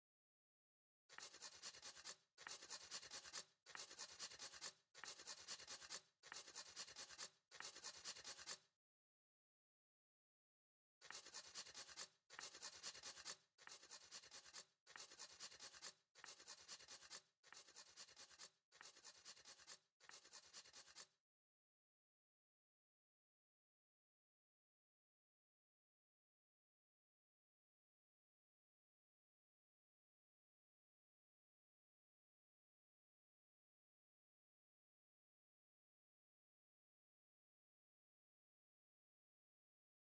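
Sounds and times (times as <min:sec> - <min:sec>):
dry scratching and rubbing: 0:01.1 - 0:08.6, 0:11.0 - 0:21.1.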